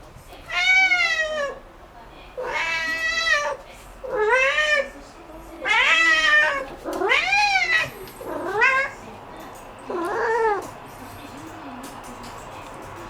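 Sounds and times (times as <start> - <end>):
cat meowing: 0.5 - 1.6, 2.4 - 5.0, 5.6 - 9.0, 9.9 - 10.7.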